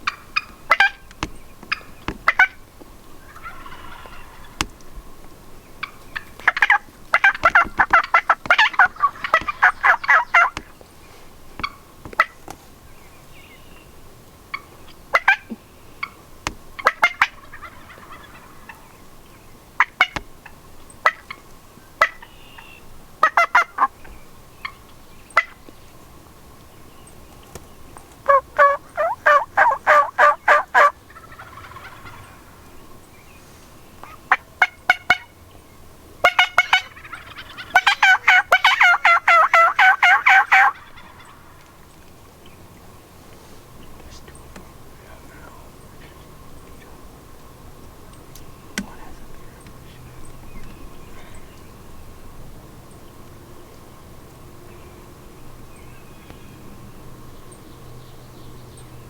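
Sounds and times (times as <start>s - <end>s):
turkey yelps: 0.0s - 1.1s, 1.7s - 2.6s, 3.2s - 4.7s, 5.8s - 10.8s, 14.5s - 16.2s, 16.8s - 19.0s, 19.8s - 21.4s, 22.0s - 24.0s, 25.4s - 25.6s, 28.2s - 32.6s, 34.0s - 35.4s, 36.2s - 41.7s
turkey clucks: 0.0s - 25.8s, 27.4s - 35.5s, 36.2s - 51.7s.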